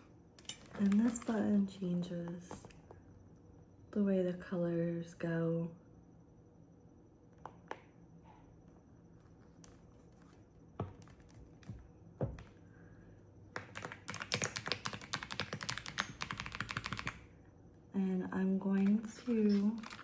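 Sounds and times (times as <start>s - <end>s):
fast typing on keyboard: 13.5s - 17.3s, 18.8s - 20.0s
keyboard key presses: 13.6s - 17.2s, 18.8s - 20.0s.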